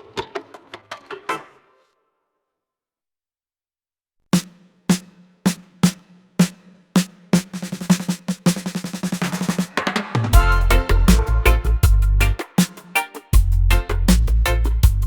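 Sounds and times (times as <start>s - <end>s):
drum strikes and roll: 4.4s - 15.0s
background music: 10.3s - 15.0s.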